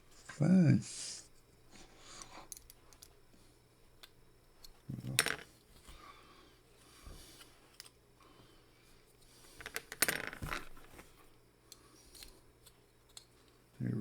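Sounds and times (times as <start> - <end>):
small metal and plastic clicks: 11.7 - 13.6.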